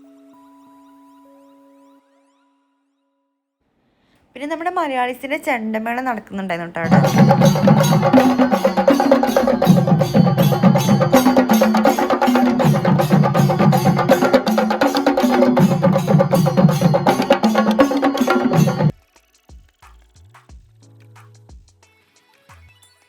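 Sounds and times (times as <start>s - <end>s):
drums beaten in fast rhythm: 6.8s - 22.8s.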